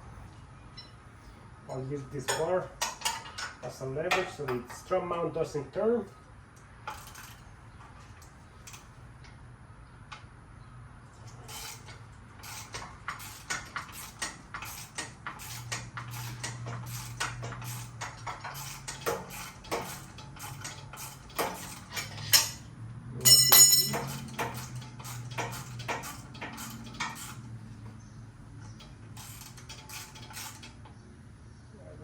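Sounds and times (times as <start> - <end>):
ratchet wrench clicking: 11.3 - 22.6, 23.3 - 27.4, 28.7 - 30.8.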